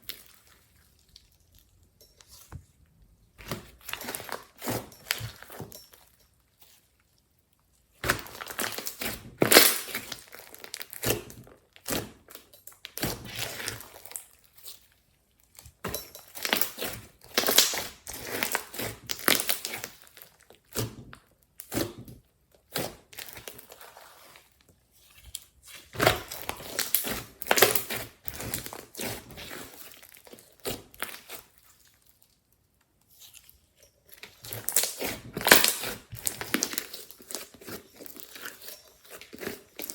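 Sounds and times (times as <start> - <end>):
slime crackling and tearing: 8.0 - 14.9, 16.4 - 20.8, 25.6 - 32.4, 34.2 - 39.9.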